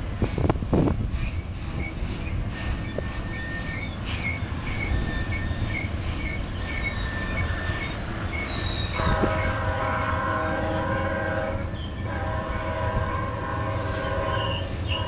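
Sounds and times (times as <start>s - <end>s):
train rumbling past: 0.0s - 15.0s
wheel squeals: 1.2s - 10.2s, 11.6s - 15.0s
locomotive air horn: 8.9s - 15.0s.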